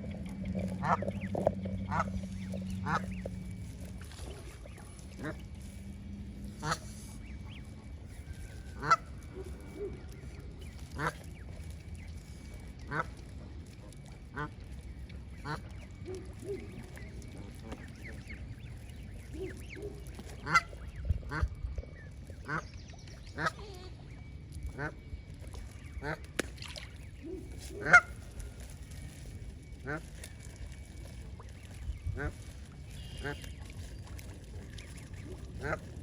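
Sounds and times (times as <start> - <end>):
geese honking: 0.0 - 10.2, 10.8 - 11.8, 12.8 - 14.8, 19.3 - 21.5, 25.9 - 26.4, 27.3 - 31.1, 32.1 - 36.0
steady low rumble: 0.0 - 36.0.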